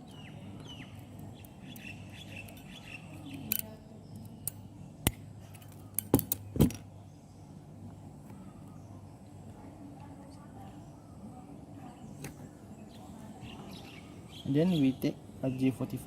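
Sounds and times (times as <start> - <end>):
faint bird chirps: 0.0 - 16.0.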